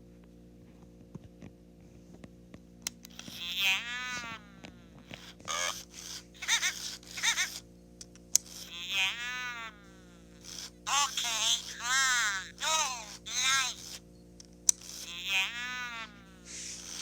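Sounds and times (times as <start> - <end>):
toy electronic voice burping: 3.1 - 7.6, 8.4 - 14.0, 14.7 - 17.0
faint clicks: 4.6 - 8.7.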